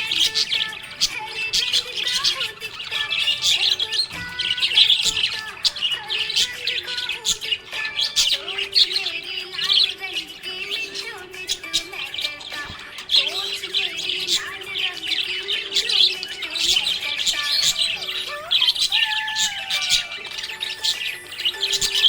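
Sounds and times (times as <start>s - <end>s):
budgies chirping and warbling: 0.0s - 22.0s.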